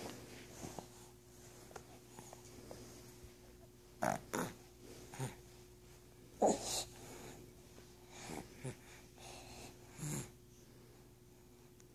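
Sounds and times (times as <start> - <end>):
faint steady hum: 0.0 - 11.9.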